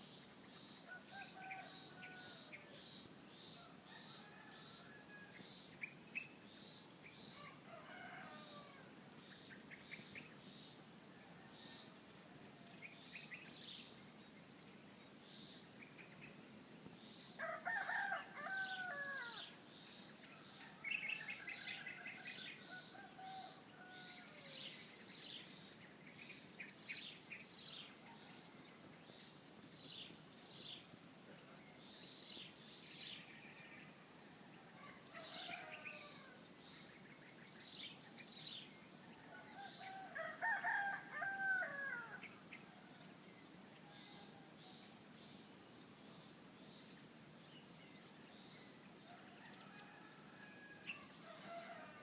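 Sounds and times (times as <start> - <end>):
rooster crowing: 7.4 - 8.9, 17.4 - 19.5, 20.7 - 24.6, 34.8 - 36.4, 39.3 - 42.2, 49.1 - 52.0.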